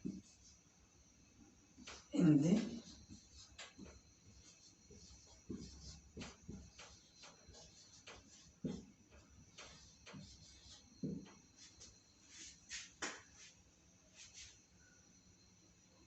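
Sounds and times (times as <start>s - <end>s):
pen scratching while handwriting: 1.8s - 8.8s.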